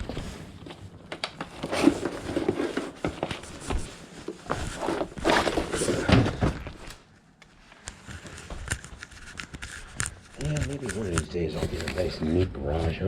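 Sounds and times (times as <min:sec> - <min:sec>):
objects knocking and clunking: 0:00.0 - 0:07.0.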